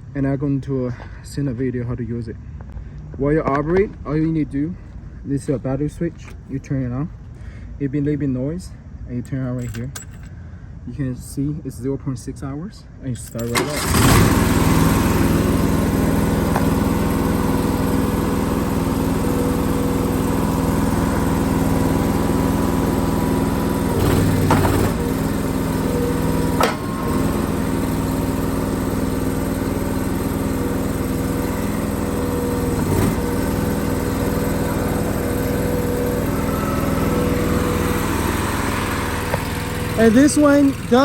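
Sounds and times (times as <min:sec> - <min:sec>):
gas engine running: 0:13.6 - 0:41.0.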